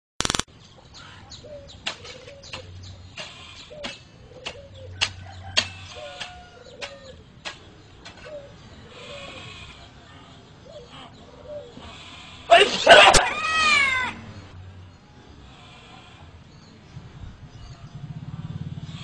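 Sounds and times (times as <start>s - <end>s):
sharp clicks: 0.2s - 0.5s.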